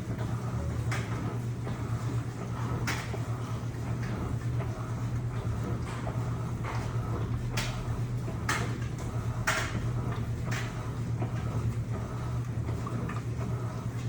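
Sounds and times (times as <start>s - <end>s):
washing machine humming: 0.0s - 14.0s.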